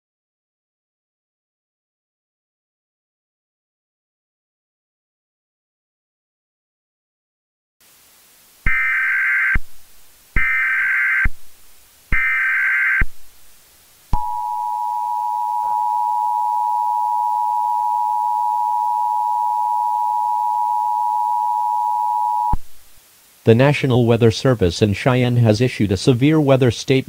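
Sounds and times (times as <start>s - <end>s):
data tone bursts: 8.7s - 9.6s, 10.4s - 11.4s, 12.1s - 13.1s, 14.2s - 22.6s
two-tone attention signal: 14.2s - 22.6s.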